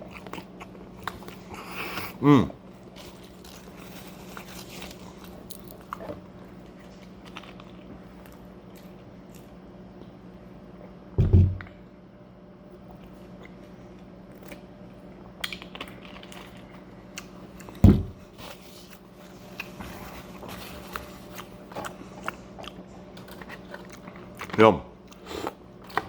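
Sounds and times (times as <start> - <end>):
faint steady hum: 0.0 - 26.0
chewing clicks and crackles: 15.4 - 17.8, 20.9 - 26.0.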